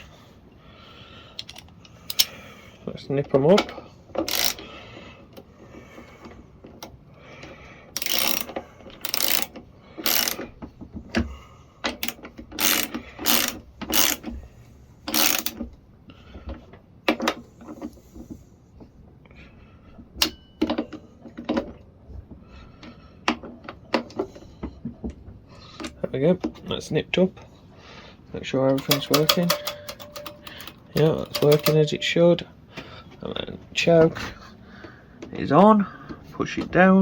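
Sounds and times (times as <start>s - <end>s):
ratchet clicking: 1.4s - 2.3s, 4.2s - 4.6s, 8.0s - 10.5s, 12.0s - 14.4s, 15.1s - 15.6s, 28.8s - 32.0s.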